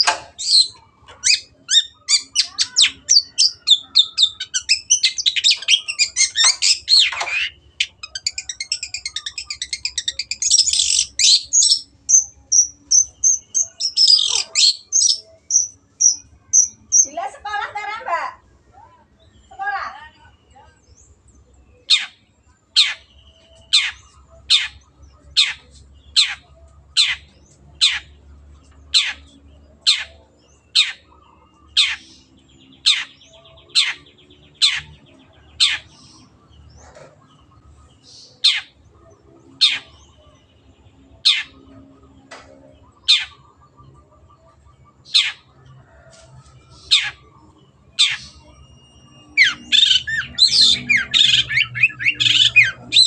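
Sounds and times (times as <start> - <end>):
bird rapid chatter: 0.0 - 17.2, 49.4 - 53.0
bird sharp downward calls: 0.0 - 17.2, 48.0 - 53.0.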